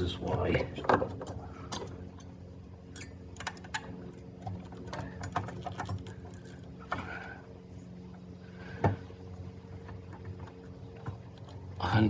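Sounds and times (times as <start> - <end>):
steady low hum: 0.0 - 12.0
hands clicking and tapping parts: 4.4 - 7.0.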